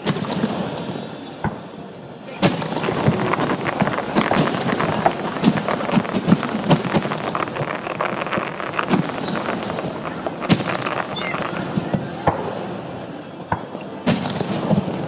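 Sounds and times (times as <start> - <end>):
fireworks booms: 0.0 - 1.6, 2.4 - 12.7, 13.6 - 15.0
fireworks bangs and crackling pops: 0.0 - 1.7, 2.3 - 12.8, 13.5 - 15.0.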